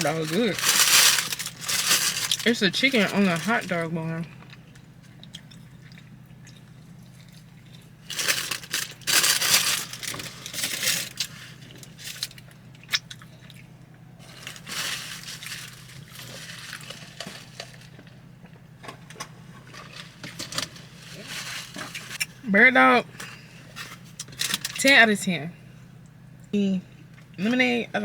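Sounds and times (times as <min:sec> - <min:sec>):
paper wrapper crinkling: 0:00.0 - 0:03.9, 0:08.0 - 0:12.5, 0:14.2 - 0:18.1, 0:19.7 - 0:22.2
low steady hum: 0:00.0 - 0:28.0.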